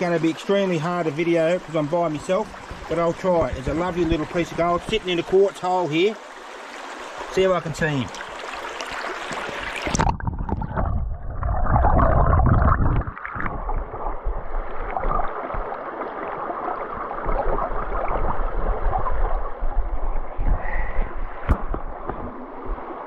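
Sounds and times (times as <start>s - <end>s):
creek water running: 0.0s - 23.0s
low rumbling on microphone: 10.0s - 15.8s, 17.0s - 23.0s.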